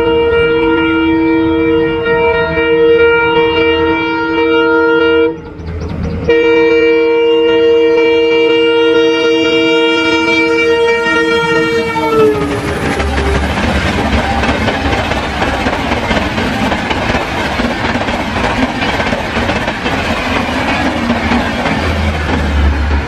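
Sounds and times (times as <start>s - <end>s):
train horn sounding a chord: 0.0s - 5.5s, 6.3s - 15.4s
train wheels clattering over rails: 12.0s - 23.0s.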